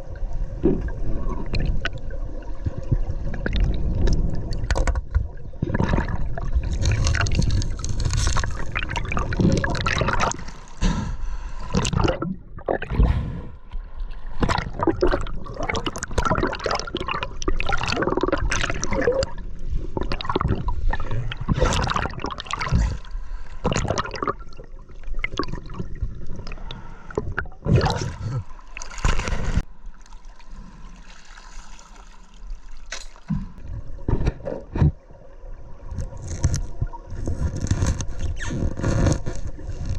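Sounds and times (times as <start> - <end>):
river water gurgling and trickling: 0.0 - 39.9.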